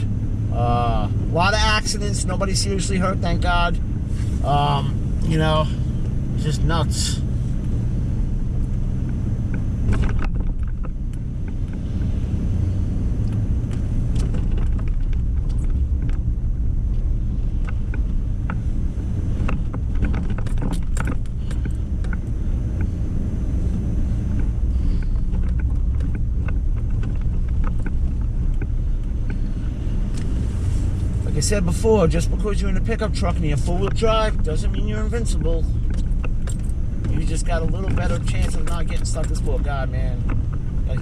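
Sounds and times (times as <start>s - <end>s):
truck engine and tyres rumbling: 0.0s - 41.0s.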